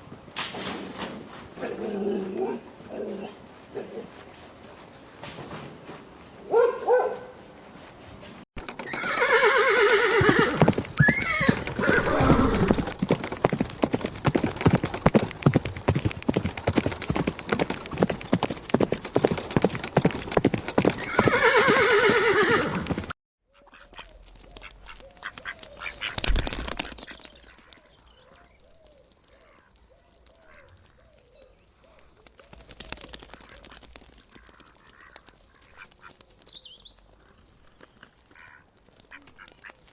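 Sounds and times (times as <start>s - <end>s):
hoofbeats: 6.5s - 23.2s
horse whinnying: 8.8s - 12.9s, 21.0s - 23.0s.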